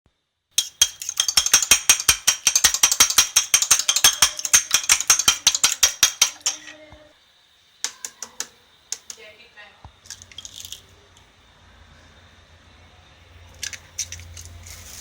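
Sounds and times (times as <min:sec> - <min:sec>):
eggs beaten in a bowl: 0:00.6 - 0:06.8, 0:07.9 - 0:09.2.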